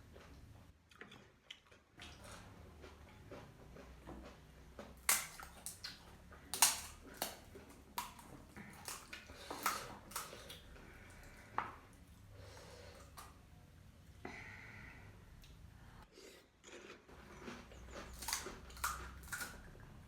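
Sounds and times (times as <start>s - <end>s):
crunching snack food: 16.6s - 19.8s.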